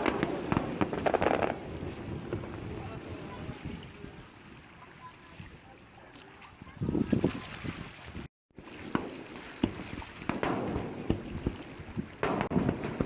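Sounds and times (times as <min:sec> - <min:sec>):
fireworks bangs and crackles: 0:00.0 - 0:03.8, 0:08.7 - 0:13.0.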